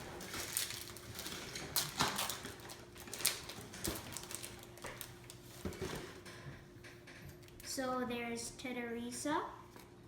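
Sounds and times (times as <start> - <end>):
wrapper being torn open: 0.0 - 5.4.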